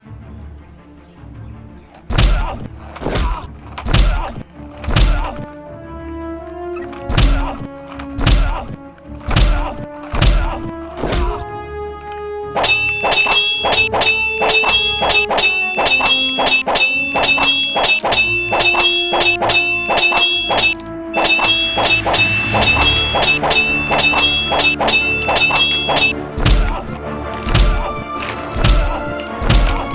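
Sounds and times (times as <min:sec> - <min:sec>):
held tones: 0:12.6 - 0:26.7.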